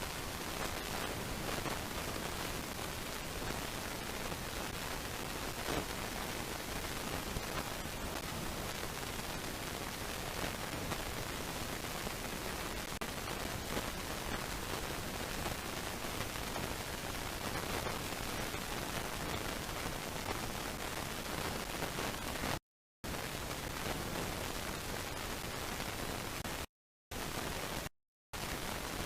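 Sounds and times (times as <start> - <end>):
steady background hiss: 0.0 - 22.4.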